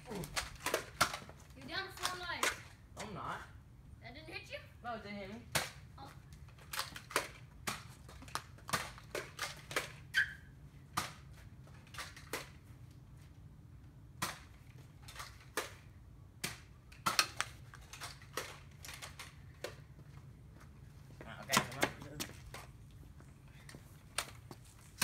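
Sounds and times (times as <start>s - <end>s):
toy dart blaster clicks and snaps: 6.7s - 10.0s.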